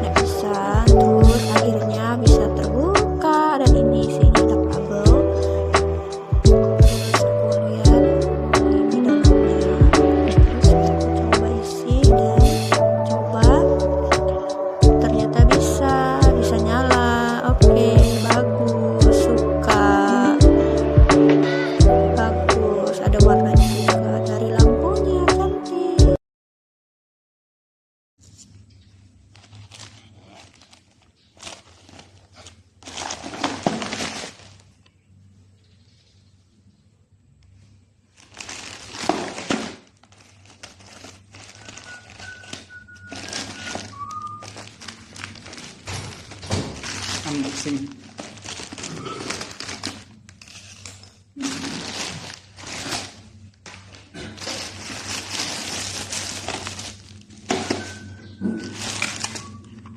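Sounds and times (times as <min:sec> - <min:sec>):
packaging rustling and crinkling: 0:28.3 - 0:35.1, 0:37.6 - 0:59.9.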